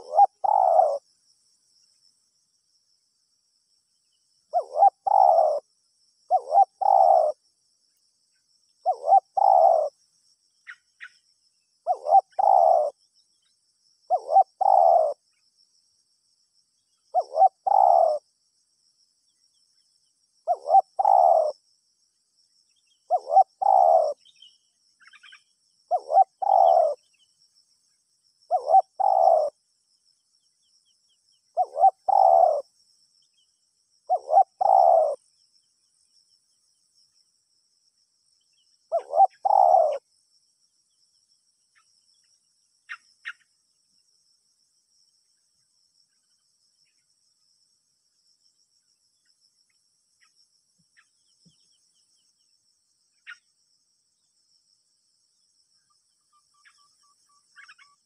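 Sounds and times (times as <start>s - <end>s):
dove cooing: 0.0s - 1.1s, 4.5s - 5.7s, 6.3s - 7.4s, 8.8s - 10.0s, 11.8s - 13.0s, 14.1s - 15.2s, 17.1s - 18.2s, 20.4s - 21.6s, 23.1s - 24.4s, 25.9s - 27.1s, 28.5s - 29.6s, 31.5s - 32.7s, 34.1s - 35.2s, 38.9s - 40.0s.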